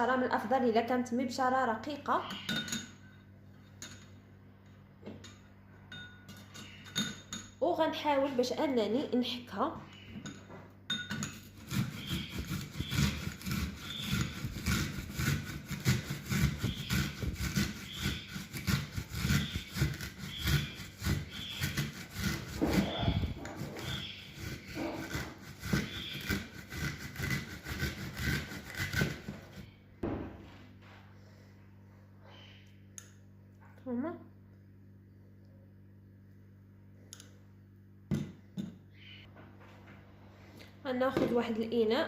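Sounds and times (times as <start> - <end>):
onion grated on a grater: 11.2 - 29.7.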